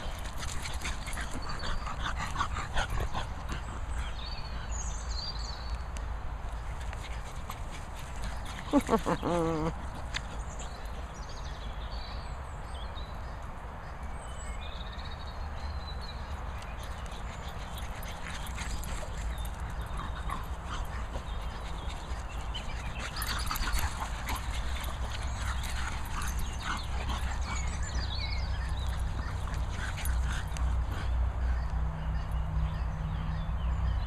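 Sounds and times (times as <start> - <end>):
scuffling paws: 0.0 - 4.7, 6.4 - 11.8, 16.2 - 31.8
dogs whimpering and yipping: 8.0 - 10.9, 17.2 - 31.6.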